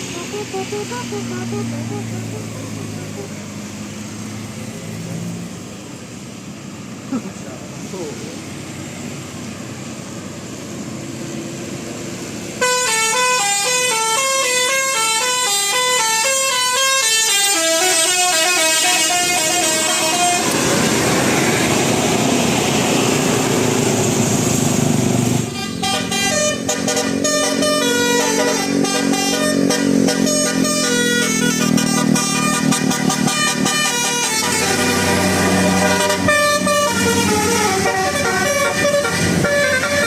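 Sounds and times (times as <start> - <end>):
bus musical horn melody: 0.0 - 3.5, 12.6 - 22.0, 25.4 - 40.0
loud noisy rush: 19.0 - 40.0.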